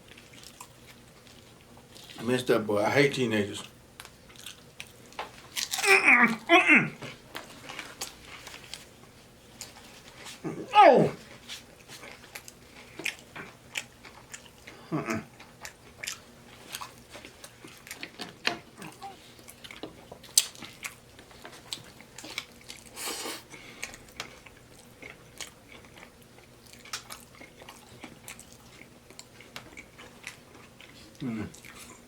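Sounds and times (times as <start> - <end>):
chewing and lip-smacking: 0.0 - 2.2, 3.6 - 8.9, 11.2 - 32.0
crisp tortilla shell crunches: 4.0 - 6.5.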